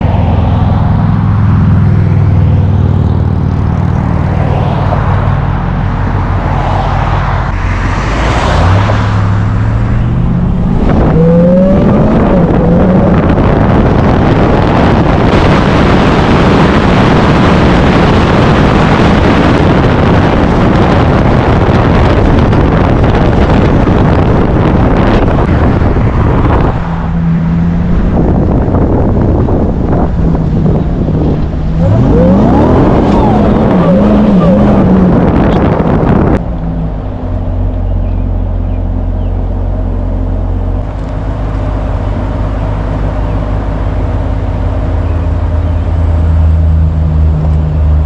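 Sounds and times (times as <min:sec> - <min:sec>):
engine running and revving: 0:00.0 - 0:48.0
loud rushing noise: 0:01.9 - 0:36.5.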